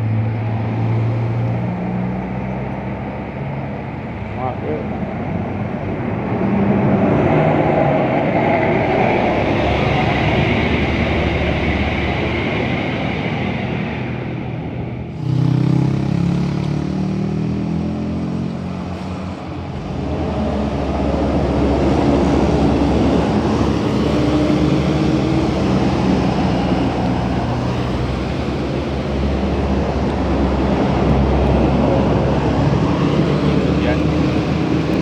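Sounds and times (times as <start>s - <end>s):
heavy engine drone: 0.0s - 35.0s
vehicle engine accelerating: 15.1s - 35.0s.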